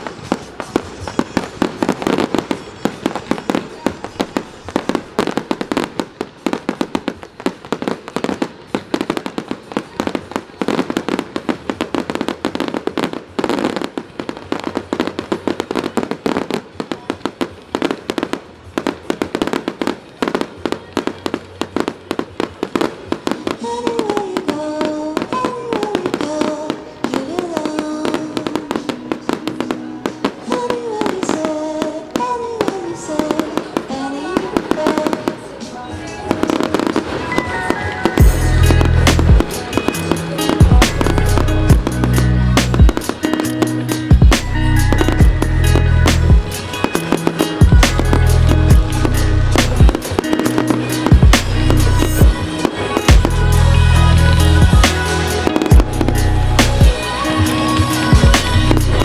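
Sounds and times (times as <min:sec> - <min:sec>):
fireworks popping and crackling: 0:00.0 - 0:59.0
melodic music: 0:23.5 - 0:59.0.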